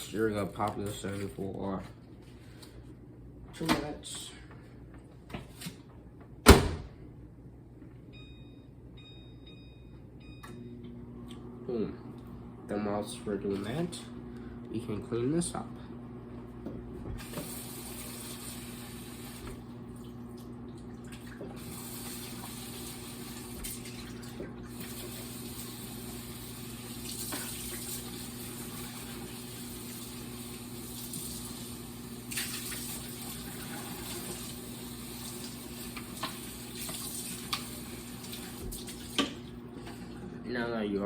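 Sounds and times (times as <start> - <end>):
microwave oven hum: 0.0 - 41.0
food containers being rinsed: 17.2 - 40.3.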